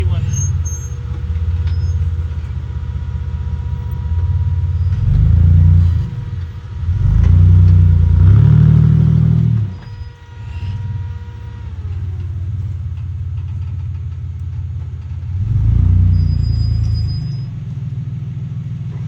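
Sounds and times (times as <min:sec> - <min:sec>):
off-road vehicle engine revving: 0:00.0 - 0:19.0.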